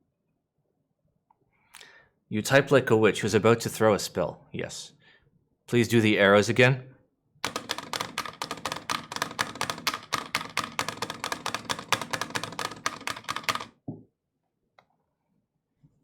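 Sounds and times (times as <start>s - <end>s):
mechanical keyboard clacking: 7.4s - 13.8s.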